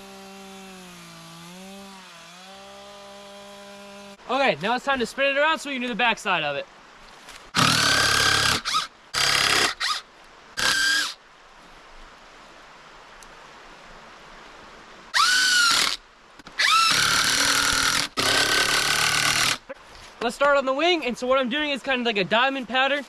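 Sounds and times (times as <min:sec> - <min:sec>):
chainsaw revving: 0:07.6 - 0:10.0, 0:16.6 - 0:19.6.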